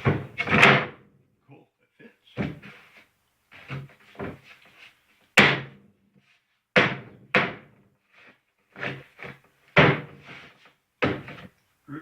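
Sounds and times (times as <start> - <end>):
knocks on plywood panel: 5.4 - 5.8, 6.8 - 7.8, 9.8 - 10.2, 11.0 - 11.4.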